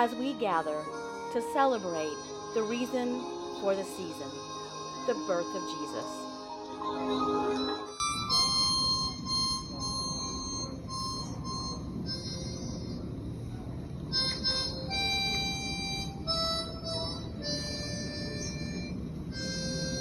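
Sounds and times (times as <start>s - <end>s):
harmonica slow melody: 0.0s - 20.0s.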